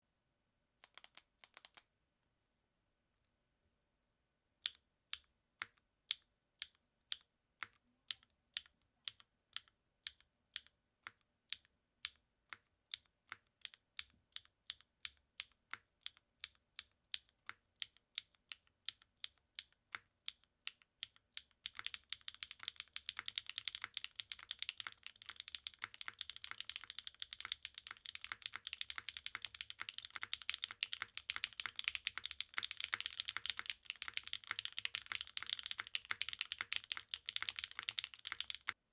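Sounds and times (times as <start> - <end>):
fast keyboard typing: 0.8 - 1.8, 17.2 - 38.8
single keyboard key presses: 0.8 - 1.8.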